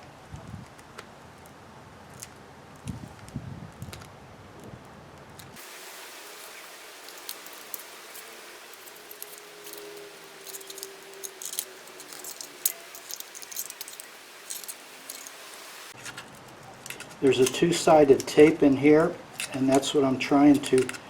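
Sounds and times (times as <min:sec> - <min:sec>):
steady hiss: 0:05.6 - 0:16.1
pry tool clicks and scrapes: 0:07.1 - 0:15.4.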